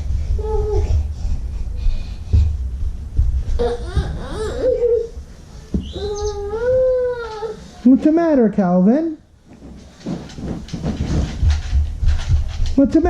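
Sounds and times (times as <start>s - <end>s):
steady low rumble: 0.0s - 7.2s, 9.2s - 13.0s
toddler whining: 0.4s - 1.0s, 3.6s - 5.2s, 5.8s - 7.8s.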